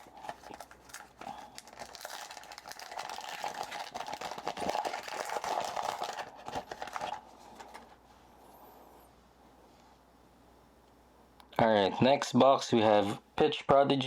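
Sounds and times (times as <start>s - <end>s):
foil wrapper crinkling: 0.0s - 7.9s.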